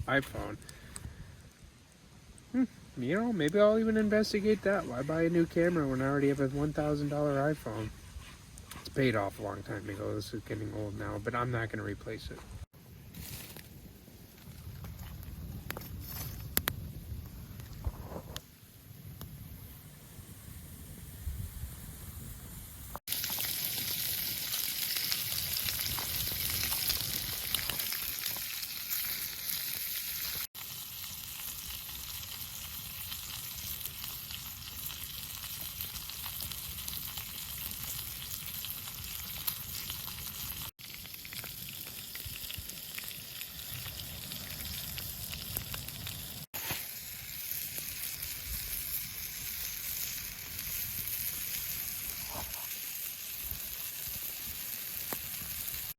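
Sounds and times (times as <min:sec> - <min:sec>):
meat sizzling in a pan: 0:22.6 - 0:55.9.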